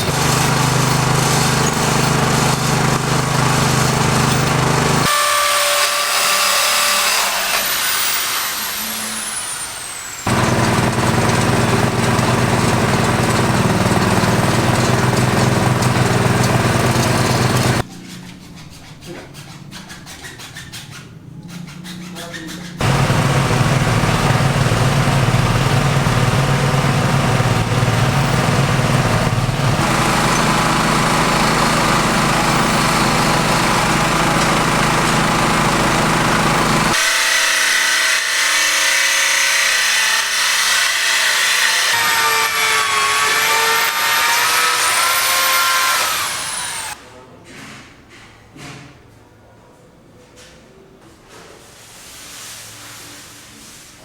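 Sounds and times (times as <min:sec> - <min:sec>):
power tool motor running: 0:00.0 - 0:17.9, 0:22.8 - 0:47.0.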